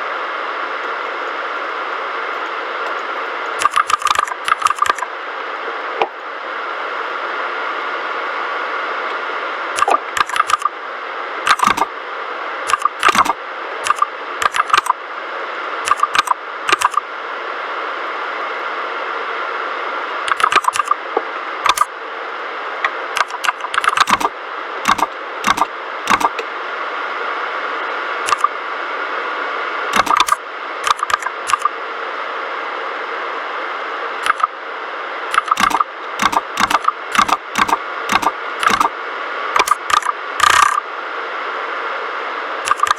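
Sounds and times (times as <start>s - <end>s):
typing on mechanical keyboard: 3.6s - 5.0s, 9.8s - 10.7s, 11.5s - 11.9s, 12.7s - 14.9s, 15.9s - 17.0s, 20.3s - 21.0s, 23.2s - 24.3s, 24.9s - 26.4s, 30.0s - 31.7s, 34.2s - 34.5s, 35.3s - 38.9s, 42.7s - 42.9s.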